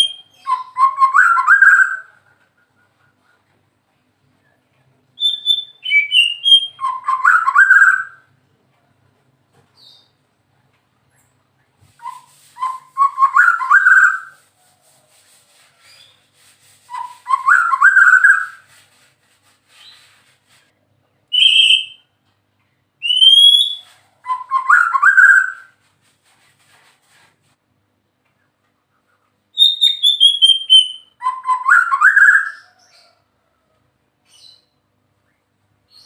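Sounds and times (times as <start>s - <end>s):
bird singing whistled phrases: 0.0s - 2.2s, 5.2s - 8.2s, 12.0s - 14.4s, 16.9s - 18.6s, 21.3s - 22.1s, 23.0s - 25.7s, 29.6s - 32.8s.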